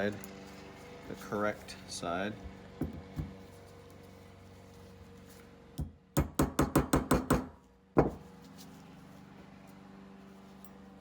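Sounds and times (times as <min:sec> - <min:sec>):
hammer tapping a punch: 0:05.8 - 0:08.2.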